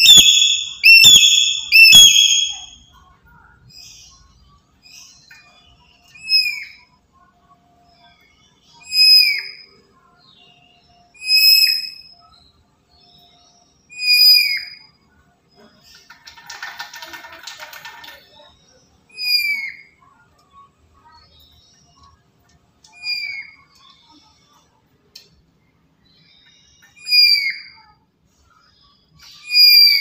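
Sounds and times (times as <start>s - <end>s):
parrot shrill whistled calls: 0.0s - 2.8s, 19.1s - 19.9s, 27.0s - 27.8s, 29.4s - 30.0s.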